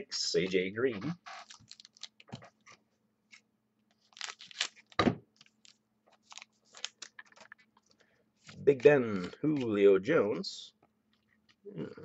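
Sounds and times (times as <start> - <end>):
card wrappers crinkling: 1.4 - 2.4, 3.9 - 9.9.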